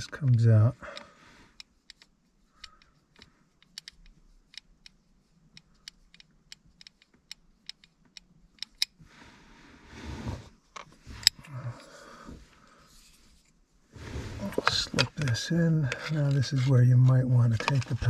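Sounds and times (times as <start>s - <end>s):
small parts clicking: 0.0s - 9.0s
scraping rustle: 12.7s - 18.0s.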